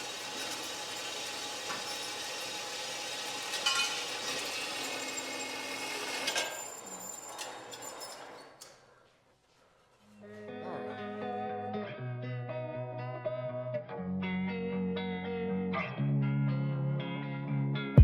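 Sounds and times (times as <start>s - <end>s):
power saw cutting steel: 0.0s - 8.9s.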